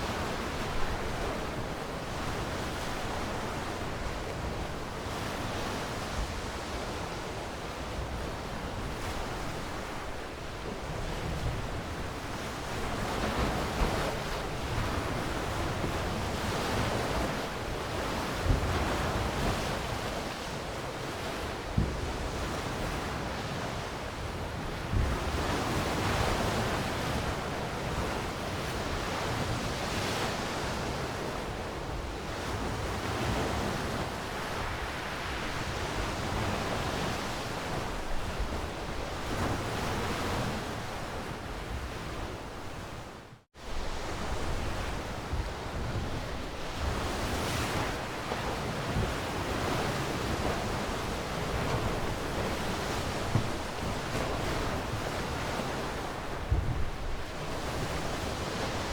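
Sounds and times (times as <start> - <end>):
ocean waves washing on shore: 0.0 - 58.9.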